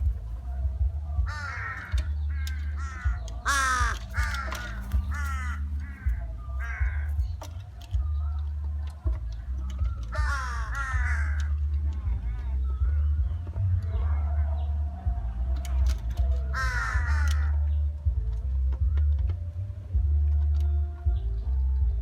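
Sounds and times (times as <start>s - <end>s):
crows cawing: 0.0s - 8.1s, 9.8s - 11.9s, 16.2s - 17.8s
steady low rumble: 0.0s - 20.4s.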